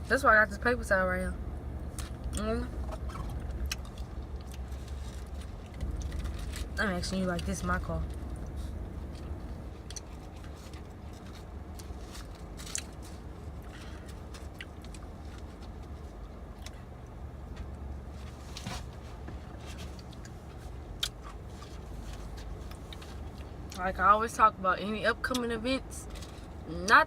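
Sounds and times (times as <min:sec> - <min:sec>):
car interior rumble: 0:00.0 - 0:27.0.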